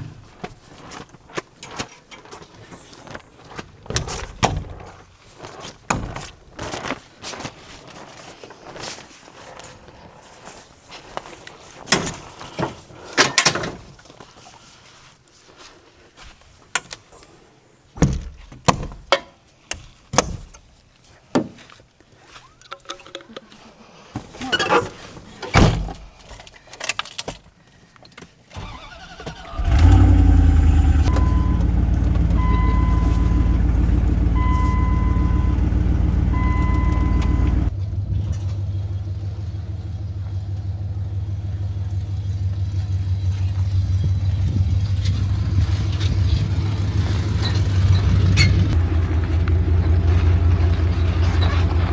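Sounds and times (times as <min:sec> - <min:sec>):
knocks and clunks: 0:03.9 - 0:05.0, 0:18.0 - 0:20.7, 0:24.2 - 0:27.4, 0:28.6 - 0:39.0
truck engine idling: 0:29.0 - 0:51.9
warning chime dinging: 0:31.1 - 0:37.7.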